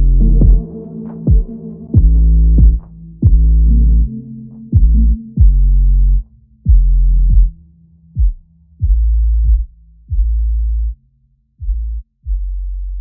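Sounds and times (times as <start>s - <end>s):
electronic music with deep bass: 0.0s - 11.0s.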